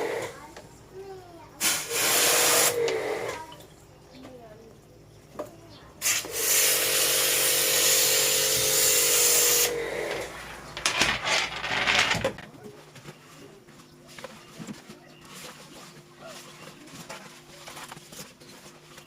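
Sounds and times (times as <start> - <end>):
water spray hissing: 1.6 - 2.9, 6.0 - 9.7
pressure washer motor whining: 6.3 - 10.8.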